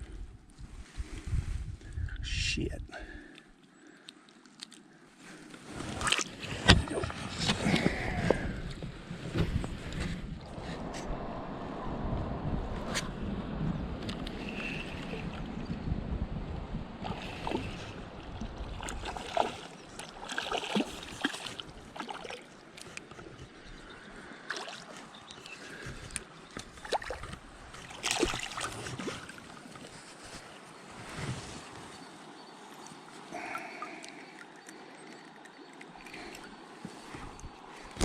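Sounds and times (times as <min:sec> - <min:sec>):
wind buffeting microphone: 0:00.0 - 0:02.8, 0:06.5 - 0:19.9
short splashes and knocks: 0:17.0 - 0:22.5, 0:24.5 - 0:25.1, 0:25.8 - 0:29.9
river water gurgling and splashing: 0:17.0 - 0:31.1, 0:31.8 - 0:38.0.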